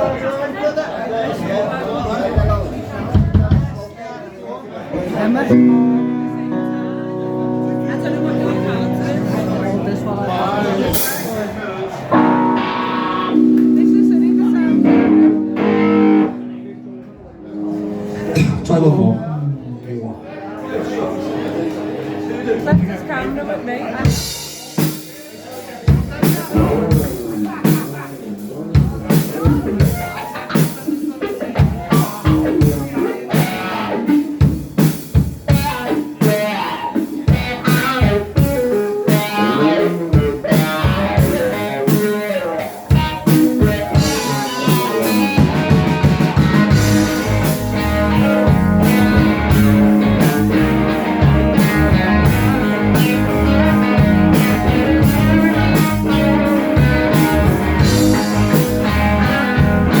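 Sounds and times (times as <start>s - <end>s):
drum hits: 2.4s - 3.9s
live band playing: 5.1s - 19.5s, 20.6s - 60.0s
electric guitar: 5.5s - 11.4s, 12.0s - 18.7s, 28.7s - 60.0s.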